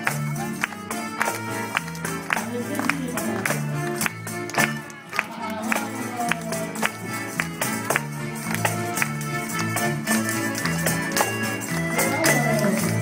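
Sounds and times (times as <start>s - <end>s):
folk ensemble playing: 0.0s - 13.0s.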